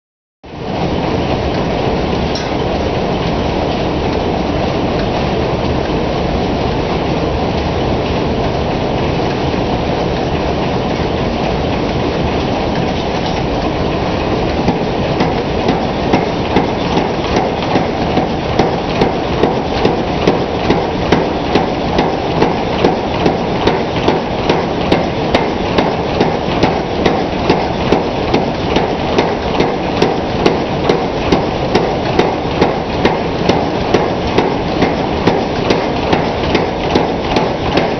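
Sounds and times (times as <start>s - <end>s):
power hammer pounding iron: 14.2s - 37.9s.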